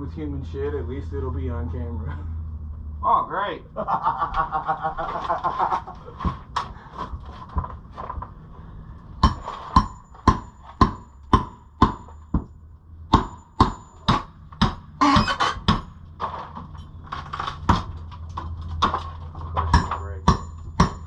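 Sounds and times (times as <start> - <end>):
noisy clatter: 3.8 - 11.4, 12.1 - 21.0
hammer blows: 9.2 - 12.5, 13.1 - 16.9.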